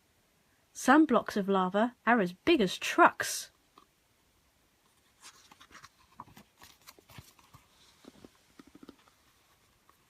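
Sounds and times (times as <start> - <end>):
book pages rustling and turning: 4.8 - 10.0.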